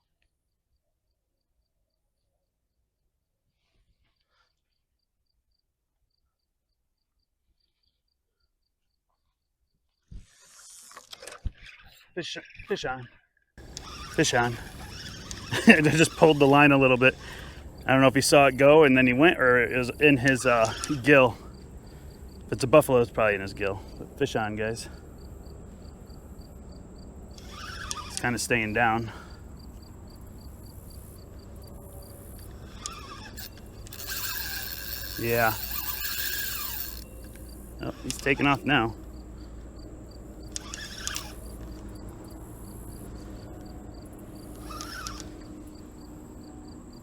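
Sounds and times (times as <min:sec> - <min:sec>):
faint insect chirping: 0:03.5 - 0:10.9, 0:13.6 - 0:47.0
light even ticking: 0:13.6 - 0:24.2, 0:27.3 - 0:46.1
fishing reel drag buzzing: 0:13.6 - 0:25.3, 0:27.3 - 0:39.6, 0:40.2 - 0:46.3.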